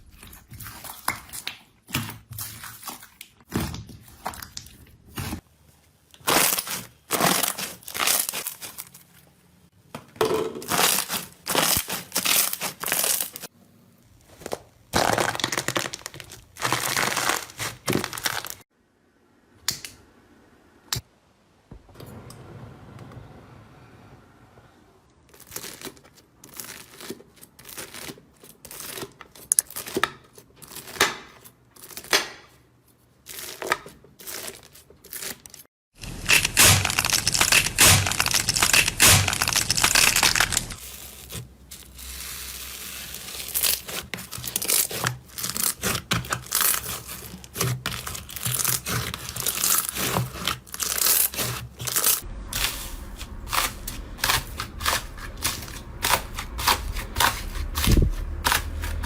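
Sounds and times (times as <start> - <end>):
slime crackling and popping: 6.2 - 8.8, 14.9 - 18.6, 36.0 - 40.9, 43.4 - 58.8.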